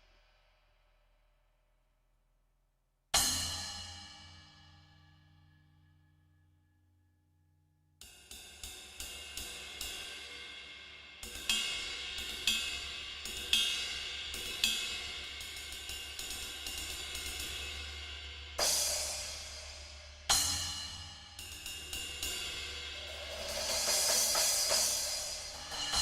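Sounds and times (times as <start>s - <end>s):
cymbal strokes: 18.6s - 26.0s
cymbal crash: 22.9s - 26.0s.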